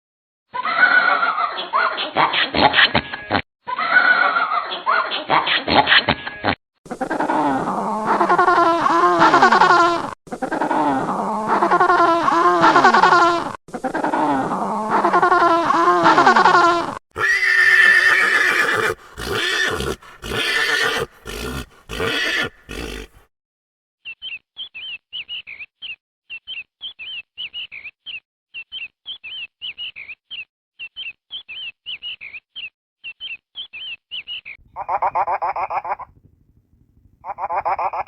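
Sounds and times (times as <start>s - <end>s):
horse whinnying: 17.2s - 23.2s.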